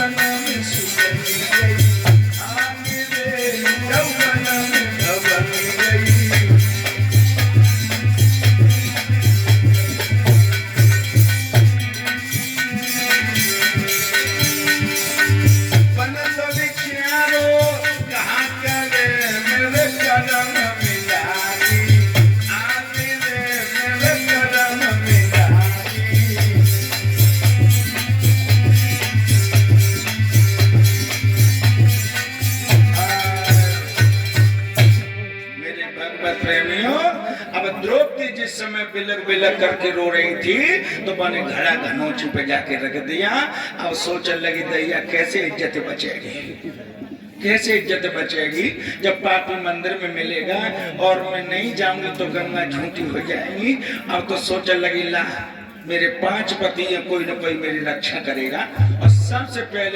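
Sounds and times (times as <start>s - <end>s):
drum and shaker percussion: 0.0s - 35.2s, 58.4s - 59.9s.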